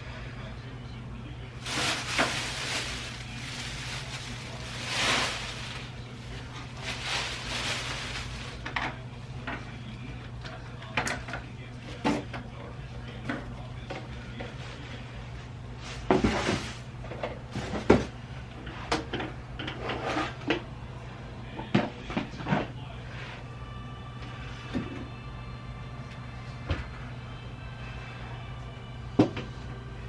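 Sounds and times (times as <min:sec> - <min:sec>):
scraping rustle: 0:01.6 - 0:08.7.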